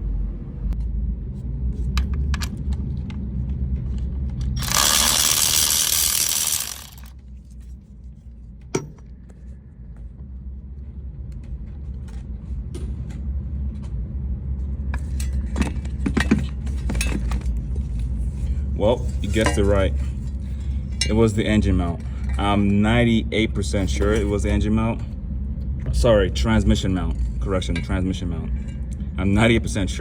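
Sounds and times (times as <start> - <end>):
low steady rumble: 0.0 - 30.0
metal tools clinking: 4.6 - 7.1.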